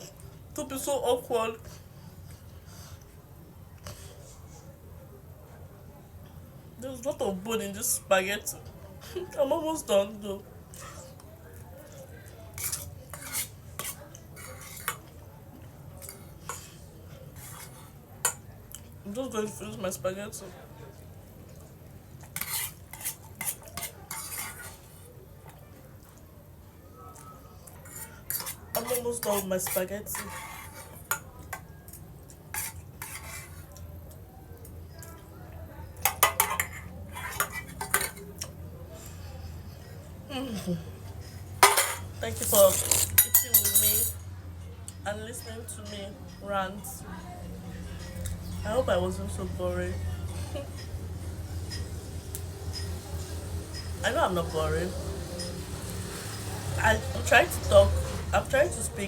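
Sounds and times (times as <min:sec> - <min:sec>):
cutlery scraping and clinking on plate: 0:10.7 - 0:19.0, 0:21.5 - 0:25.6, 0:27.6 - 0:33.9, 0:35.9 - 0:40.2, 0:41.0 - 0:44.3, 0:47.9 - 0:48.7, 0:50.2 - 0:54.0.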